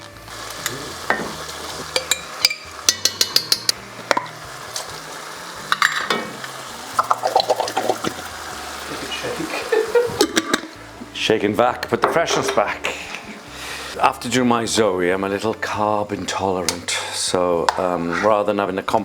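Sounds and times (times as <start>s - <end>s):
spoon clinking against pan: 1.1s - 4.3s.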